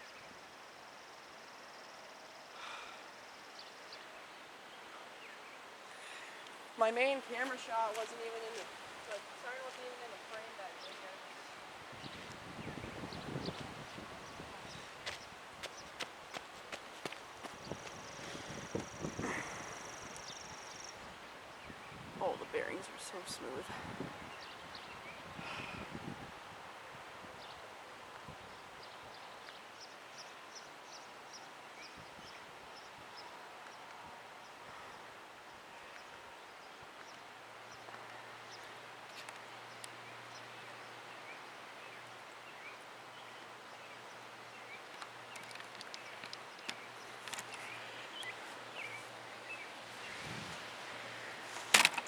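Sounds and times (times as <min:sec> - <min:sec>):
birds chirping: 0:01.8 - 0:26.0, 0:34.4 - 0:52.0.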